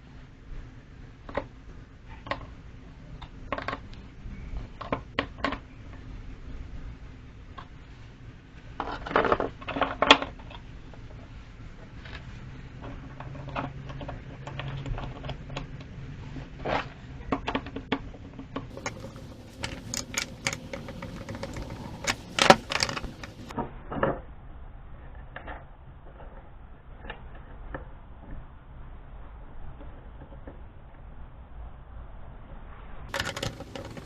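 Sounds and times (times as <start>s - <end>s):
metal hardware clicking and clanking: 33.1s - 34.0s.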